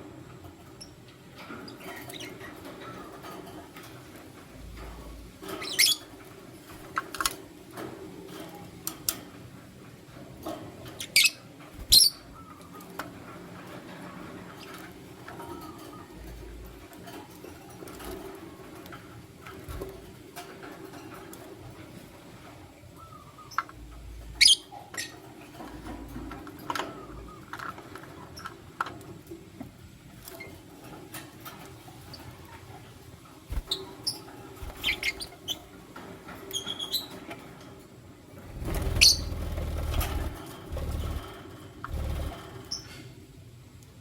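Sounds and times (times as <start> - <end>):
birds chirping and squeaking: 5.5 - 6.1, 11.0 - 12.8, 33.5 - 35.7, 36.5 - 37.2, 38.4 - 42.9
rustling and low thumps: 34.6 - 35.3, 38.4 - 42.4.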